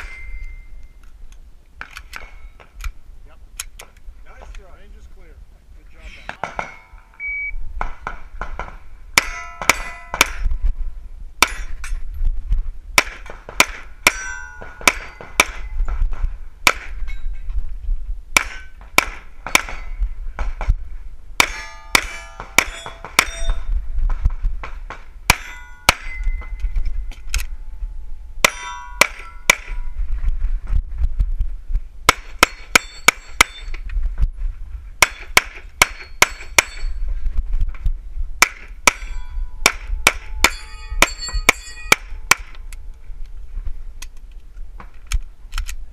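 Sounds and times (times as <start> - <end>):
steel targets clanging: 0.0 - 0.7, 6.0 - 7.1, 9.2 - 10.5, 11.4 - 12.0, 14.1 - 15.7, 21.4 - 23.7, 25.3 - 26.6, 28.4 - 29.9, 32.2 - 33.8, 35.0 - 37.0, 38.8 - 42.5.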